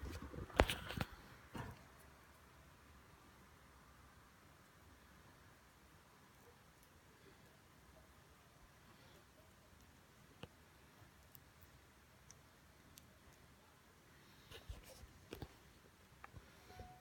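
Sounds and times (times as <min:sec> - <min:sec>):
faint clicks and taps: 0:14.5 - 0:15.6.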